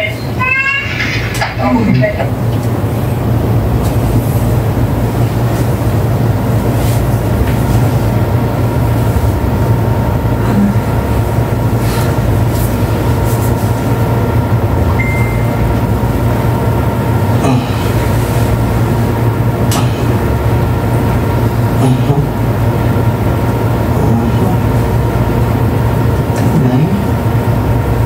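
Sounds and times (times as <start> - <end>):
low mechanical hum: 0.0 - 28.0
faint high steady tone: 14.9 - 15.8.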